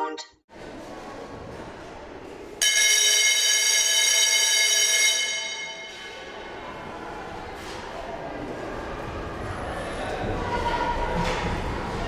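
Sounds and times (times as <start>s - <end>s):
murmur of school corridor: 0.5s - 12.0s
electric school bell ringing: 2.6s - 6.4s.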